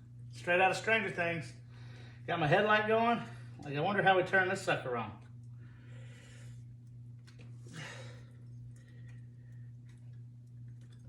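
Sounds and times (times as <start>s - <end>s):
steady low hum: 0.0s - 11.0s
faint breaths: 1.6s - 2.3s, 5.5s - 6.8s, 7.6s - 9.8s.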